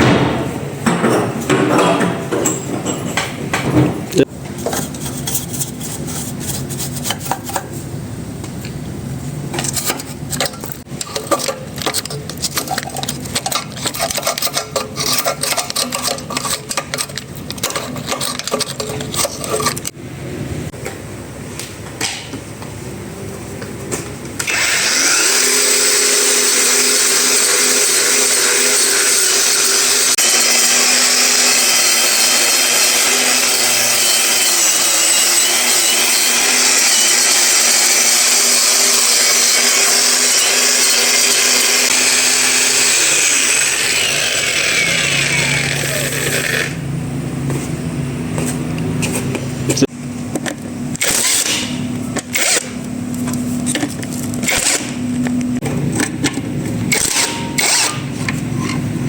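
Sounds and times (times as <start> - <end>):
hand tools clicking on metal: 9.6 - 20.0
electric power tool running: 24.4 - 46.9.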